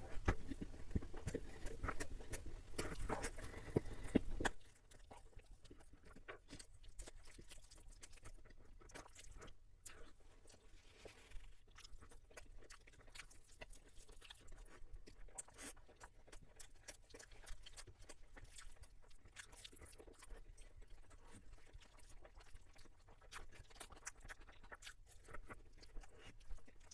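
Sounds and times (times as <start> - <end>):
person chewing and crunching food: 0.0 - 26.9.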